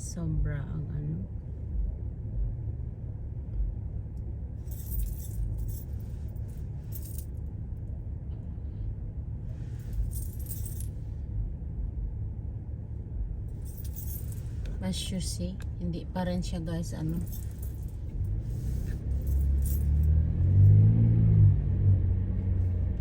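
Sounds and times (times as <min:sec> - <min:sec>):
road and engine rumble: 0:00.0 - 0:23.0
metallic jingling rattles: 0:04.6 - 0:07.4, 0:09.7 - 0:11.0, 0:13.5 - 0:15.6, 0:16.8 - 0:20.2.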